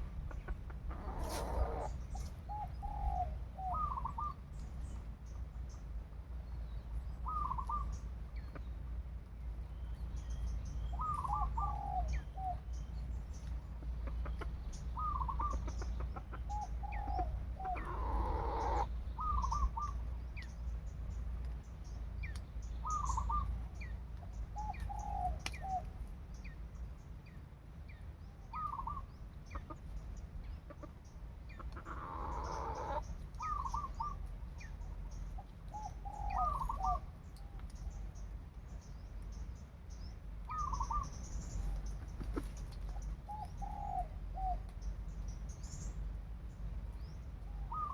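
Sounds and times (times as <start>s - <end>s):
fowl clucking: 0.0s - 2.3s, 13.8s - 19.6s, 30.7s - 34.1s
steady low rumble: 0.0s - 47.9s.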